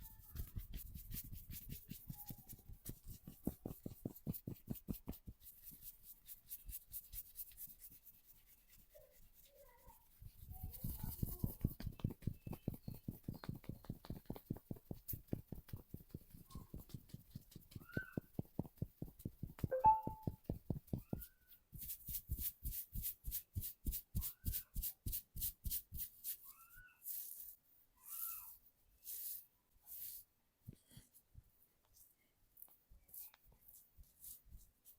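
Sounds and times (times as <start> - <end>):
hands tapping on body: 0.1 - 5.6, 10.6 - 21.4.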